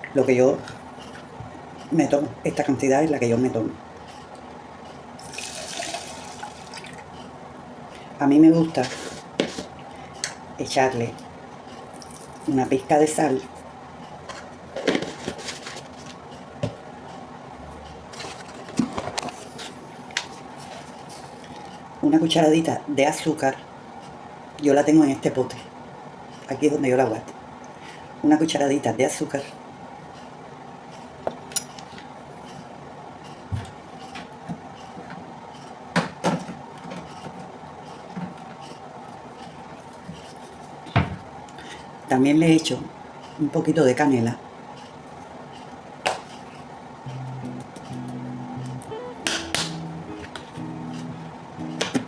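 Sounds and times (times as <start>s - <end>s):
faint background hum: 0.0s - 52.0s.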